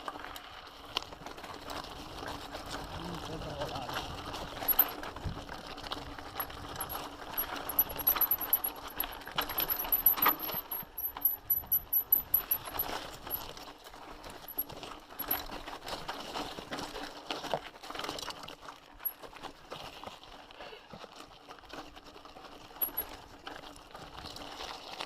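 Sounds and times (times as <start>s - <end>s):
bike rattling over rocky ground: 0.0s - 25.0s
metallic jingling: 4.6s - 5.0s, 6.4s - 13.5s, 14.4s - 15.5s, 22.8s - 23.1s.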